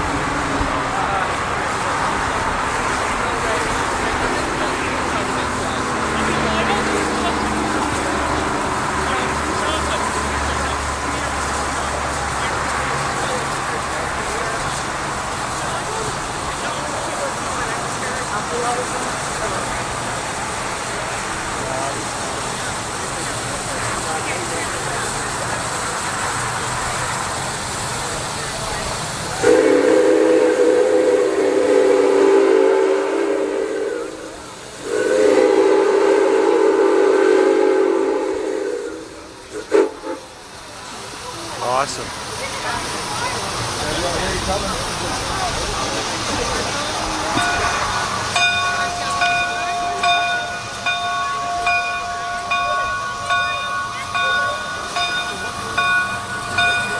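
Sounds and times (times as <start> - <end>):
steady hiss: 0.0 - 56.9
steam locomotive whistle: 29.4 - 40.3, 47.0 - 56.9
locomotive bell ringing: 46.4 - 56.9.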